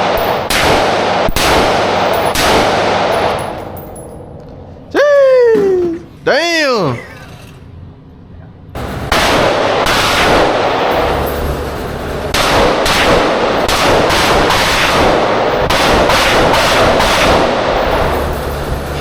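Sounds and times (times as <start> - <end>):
rifle shots echoing: 0.0 - 4.1, 8.8 - 19.0.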